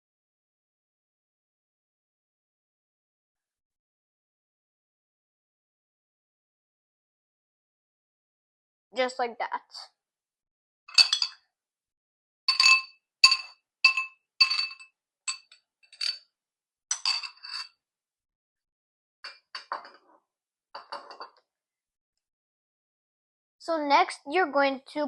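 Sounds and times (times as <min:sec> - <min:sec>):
spoon clinking on dish: 0:10.9 - 0:11.4, 0:12.5 - 0:16.2, 0:16.9 - 0:17.7.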